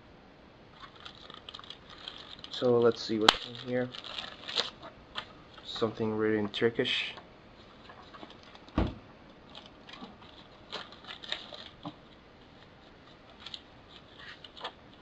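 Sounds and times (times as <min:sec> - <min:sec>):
paper rustling: 0:00.8 - 0:06.6, 0:09.5 - 0:15.0
box thump: 0:08.8 - 0:09.0.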